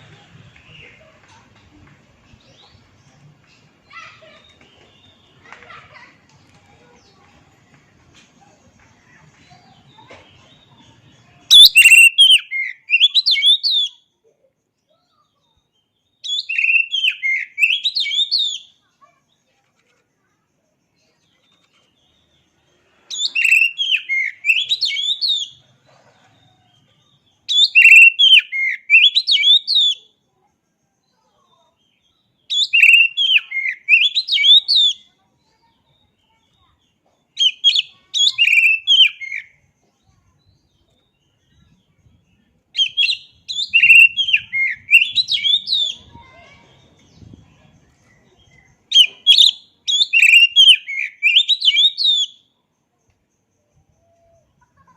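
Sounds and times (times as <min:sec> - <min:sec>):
bird singing whistled notes: 0:11.5 - 0:14.0, 0:15.4 - 0:18.7, 0:23.1 - 0:25.6, 0:27.5 - 0:30.1, 0:32.4 - 0:35.1, 0:37.4 - 0:39.6, 0:40.4 - 0:46.2, 0:48.0 - 0:52.5.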